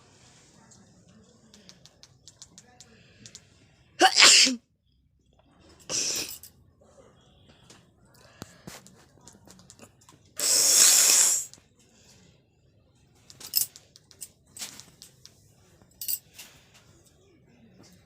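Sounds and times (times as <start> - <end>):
person sneezing: 4.0 - 4.6, 5.9 - 6.4, 10.4 - 11.5.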